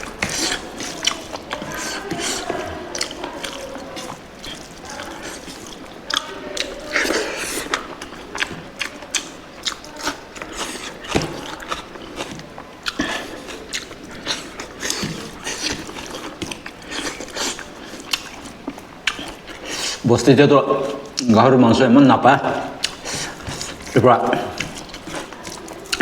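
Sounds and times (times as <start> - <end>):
chewing food crunches: 0.0 - 20.1, 22.7 - 26.0.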